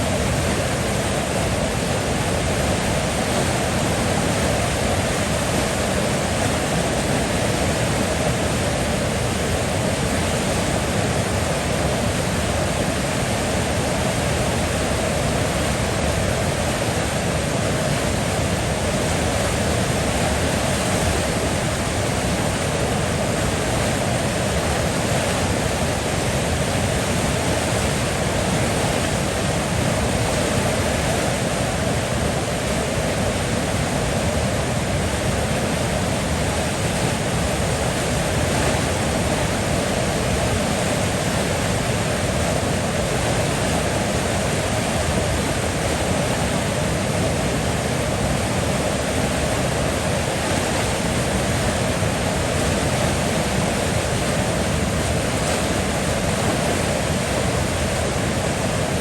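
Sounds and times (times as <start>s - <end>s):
river water flowing: 0.0s - 59.0s.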